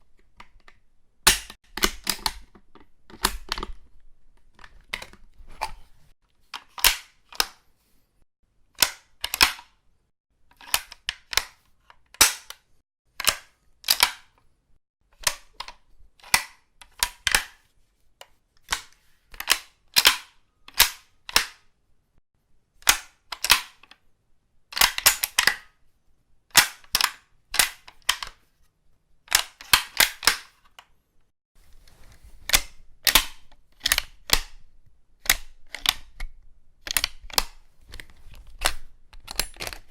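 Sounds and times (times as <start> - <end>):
rifle bolt clicks and clacks: 0.3 - 3.8, 13.2 - 14.2, 22.8 - 24.0, 24.7 - 25.7, 26.5 - 28.4, 29.3 - 30.9, 32.5 - 34.6, 35.2 - 39.9.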